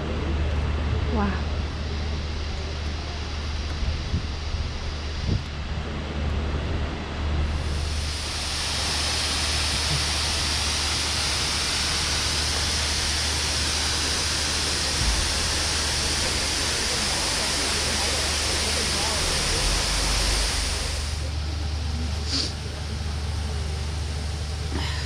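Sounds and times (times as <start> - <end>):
rushing noise: 6.6 - 21.4
boat engine humming: 7.2 - 25.0.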